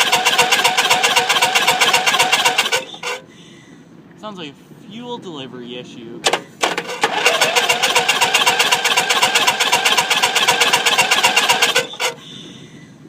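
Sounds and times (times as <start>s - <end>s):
small engine cranking and chugging: 0.0s - 3.2s, 6.3s - 12.3s.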